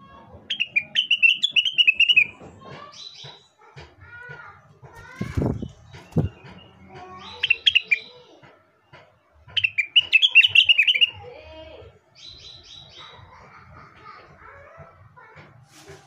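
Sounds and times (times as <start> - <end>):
bird singing sharp chirps: 0.5 - 2.4, 5.4 - 8.2, 9.6 - 11.2.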